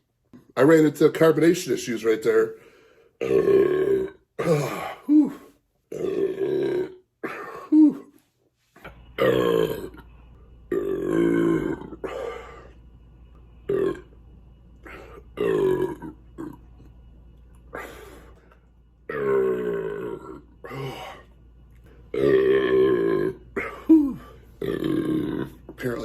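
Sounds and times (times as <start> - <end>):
man belching: 3.2 - 8.0, 9.2 - 10.0, 10.7 - 12.7, 13.7 - 14.2, 14.8 - 16.7, 19.1 - 21.3, 22.1 - 26.0.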